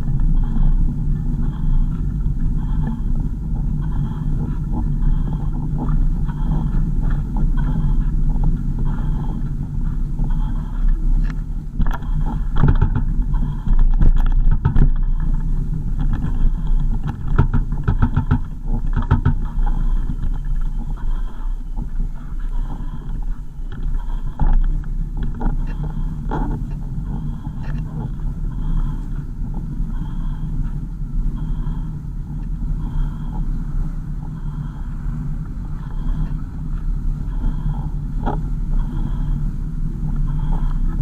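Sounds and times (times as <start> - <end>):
engine and tyre rumble: 0.0 - 41.0
knocks and rattles: 11.8 - 20.7.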